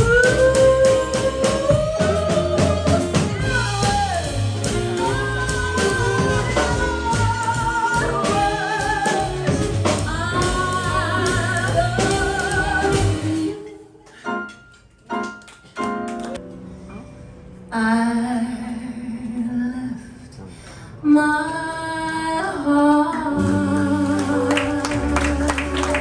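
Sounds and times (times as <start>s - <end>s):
person singing with vibrato: 0.0s - 14.0s
instrumental backing: 0.0s - 17.6s.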